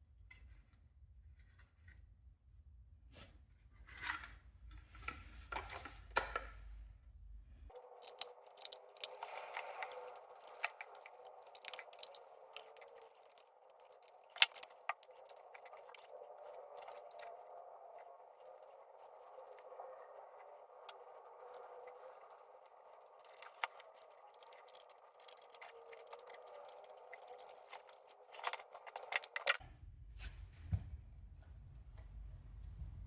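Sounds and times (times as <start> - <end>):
clicks and rattles of tools: 7.7 - 17.3, 22.2 - 29.6.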